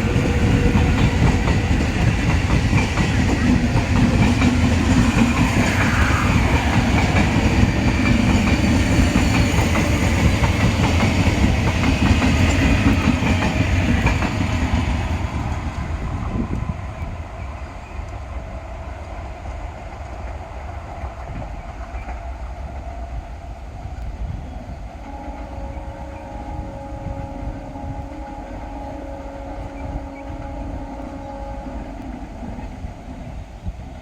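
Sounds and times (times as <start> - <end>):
train rumbling on rails: 0.0 - 34.0
multi-tone whine: 21.0 - 34.0.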